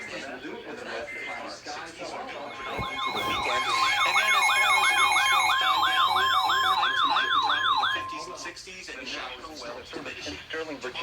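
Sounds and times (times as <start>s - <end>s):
warbling electronic alert tone: 2.5s - 8.3s.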